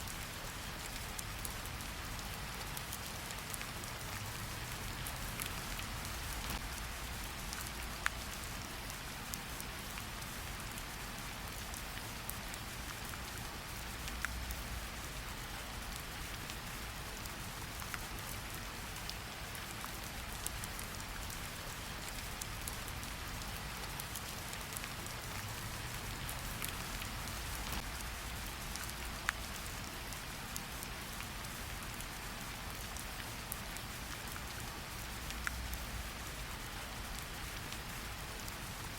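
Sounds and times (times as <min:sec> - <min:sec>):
rain hissing: 0:00.0 - 0:08.5, 0:21.8 - 0:33.4
wood fire crackling: 0:24.1 - 0:30.1.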